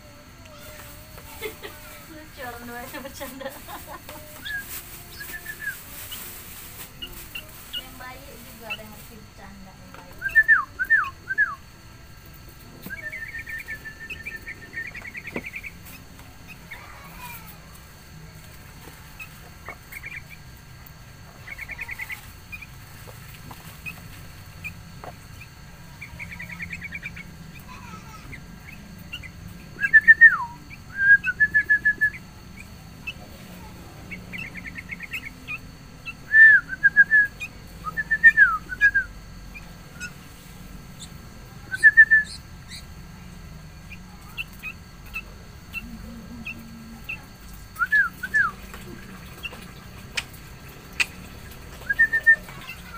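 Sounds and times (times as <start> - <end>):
birds calling with whistled notes: 12.8 - 17.0, 25.4 - 27.7, 28.3 - 33.2, 34.1 - 40.2, 41.0 - 42.9, 47.8 - 48.6, 51.8 - 52.9
bird trills: 12.9 - 17.3, 19.1 - 20.6, 21.4 - 33.2, 34.0 - 40.2, 40.9 - 43.0.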